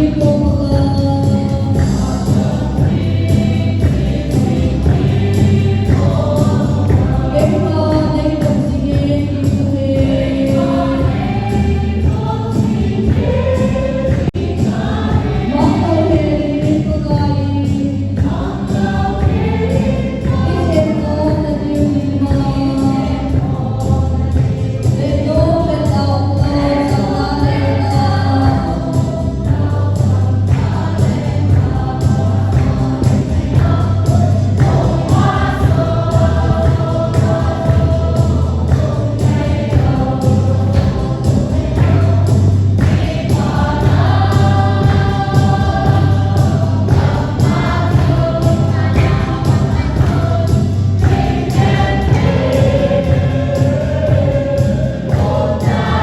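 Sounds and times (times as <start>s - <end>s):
gospel choir singing over a beat: 0.0s - 56.0s.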